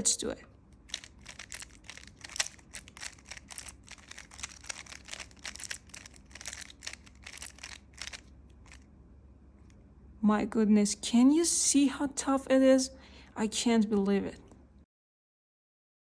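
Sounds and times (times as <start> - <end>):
puzzle cube clicking: 0.8 - 8.8.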